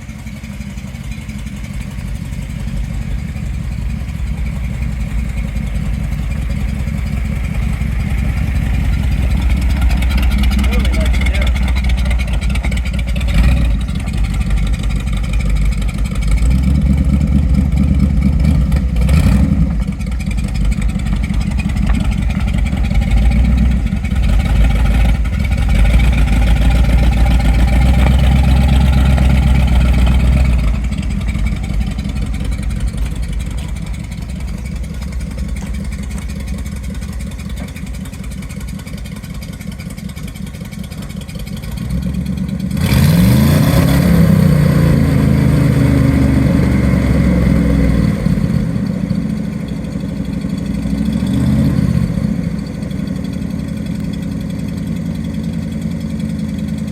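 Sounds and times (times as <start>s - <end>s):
car engine accelerating: 0.0s - 56.9s.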